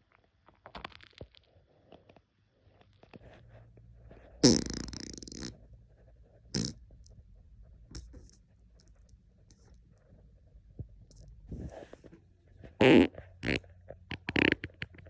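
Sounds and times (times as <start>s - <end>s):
man farting: 4.4s - 5.5s, 6.6s - 6.8s, 12.8s - 14.8s.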